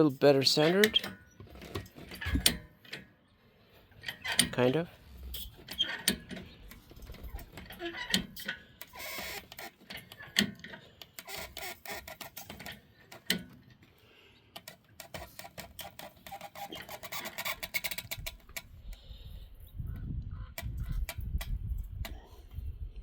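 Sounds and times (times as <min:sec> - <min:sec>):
ratchet strap clicking: 0:05.3 - 0:13.5, 0:14.6 - 0:19.0, 0:20.6 - 0:22.2.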